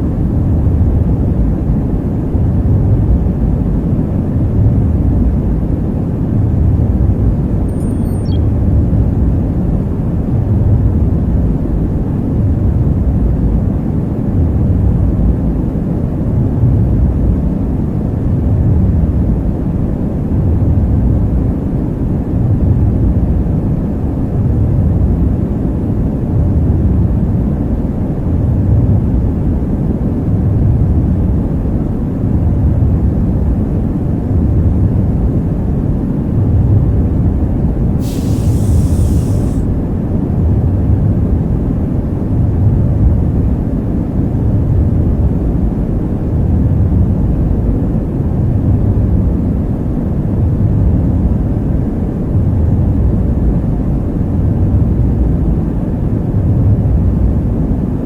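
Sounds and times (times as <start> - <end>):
short high hiss: 38.0 - 39.7
deep ambient rumble: 38.0 - 39.8.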